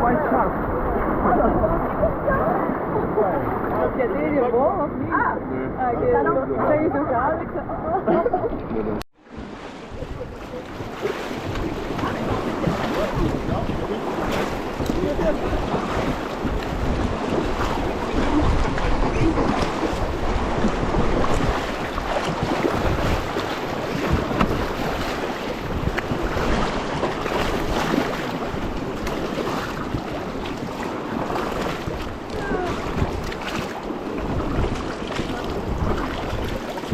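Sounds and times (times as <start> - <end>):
whitewater rushing and splashing: 9.2 - 36.9
wind buffeting microphone: 9.3 - 36.9.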